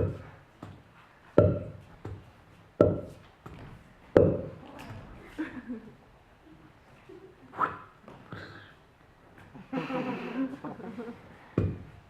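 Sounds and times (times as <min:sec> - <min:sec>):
soft ball bounce ticks: 0:01.4 - 0:02.2, 0:02.8 - 0:03.2, 0:04.2 - 0:04.5
imitated racket hit pops: 0:02.8 - 0:04.5.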